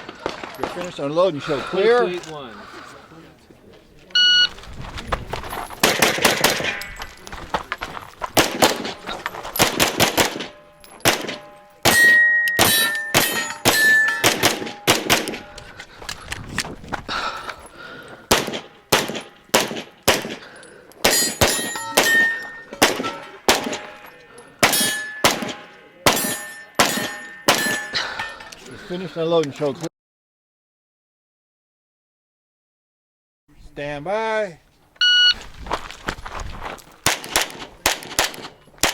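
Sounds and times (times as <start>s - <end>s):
rapid pistol shots: 5.8s - 6.8s, 8.4s - 15.5s, 18.3s - 23.9s, 24.6s - 27.9s, 37.0s - 38.9s
steel targets ringing: 5.8s - 7.3s, 9.0s - 15.6s, 21.0s - 28.5s.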